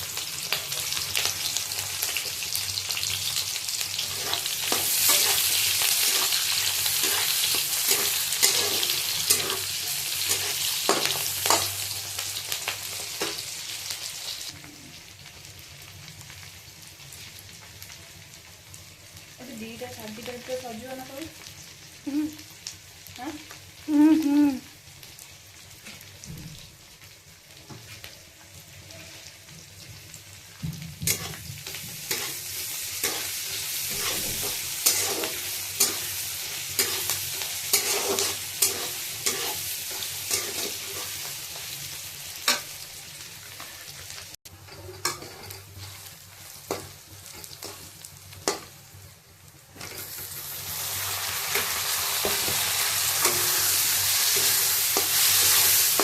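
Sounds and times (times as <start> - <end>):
food sizzling in a pan: 0.0 - 56.0
spatula scraping a pan: 3.9 - 11.8, 31.0 - 41.7, 44.7 - 48.7.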